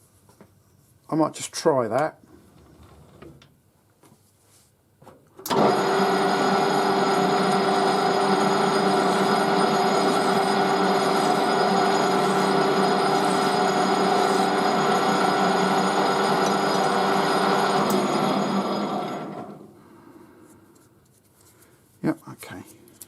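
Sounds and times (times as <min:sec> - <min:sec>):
metal lathe running: 0:05.5 - 0:19.7
gear whine: 0:05.5 - 0:19.8.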